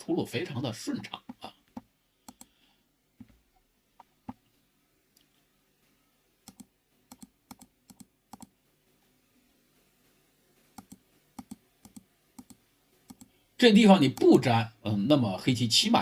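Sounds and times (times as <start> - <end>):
computer mouse clicks: 1.7 - 2.6, 6.4 - 8.6, 10.8 - 13.3.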